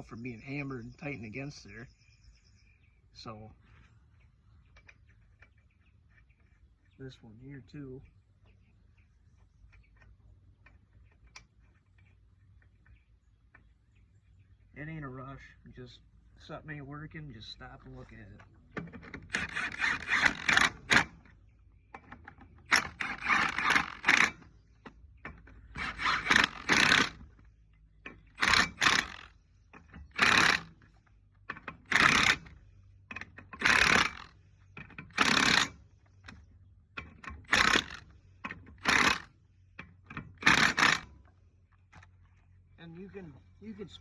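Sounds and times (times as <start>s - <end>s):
wrench tightening nuts: 19.1s - 21.1s, 22.7s - 24.4s, 25.3s - 27.2s, 28.0s - 30.8s, 31.5s - 32.5s, 33.1s - 35.8s, 37.0s - 41.1s.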